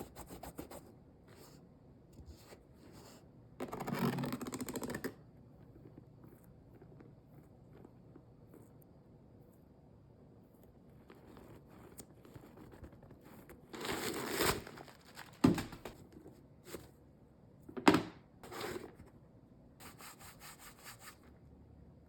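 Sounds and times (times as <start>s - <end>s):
cardboard rubbing and scraping: 11.1s - 16.0s.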